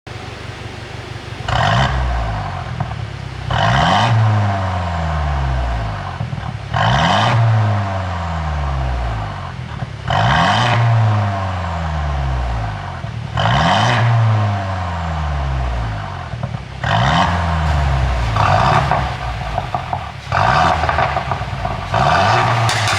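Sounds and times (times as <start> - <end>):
exhaust popping and crackling: 0.4 - 4.7, 5.4 - 7.6, 15.7 - 22.9
car engine revving: 1.5 - 22.9.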